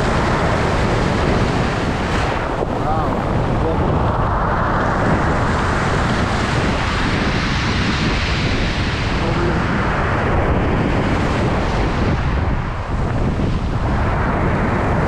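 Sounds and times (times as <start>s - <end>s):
waves breaking on pebble beach: 0.0s - 3.9s
wind rumbling on microphone: 0.0s - 15.0s.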